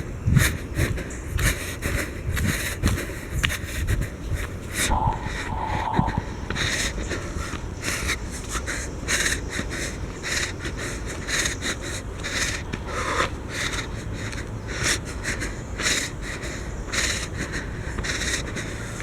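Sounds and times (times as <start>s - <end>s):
person breathing hard: 0.0s - 19.0s
handling noise rumble: 4.5s - 7.8s.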